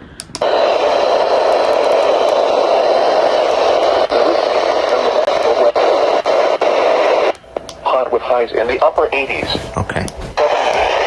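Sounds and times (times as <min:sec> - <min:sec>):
radio static hiss: 0:00.0 - 0:11.0
faint broken broadcast voice: 0:00.4 - 0:11.0.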